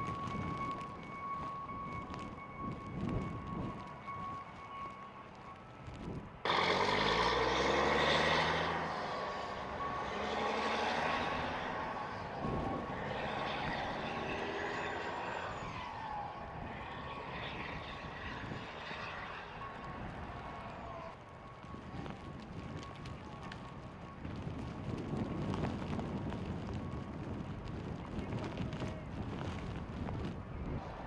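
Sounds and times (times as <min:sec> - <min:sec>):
road and wind noise: 0:00.0 - 0:31.0
large vehicle engine passing: 0:06.4 - 0:21.2, 0:30.3 - 0:31.0.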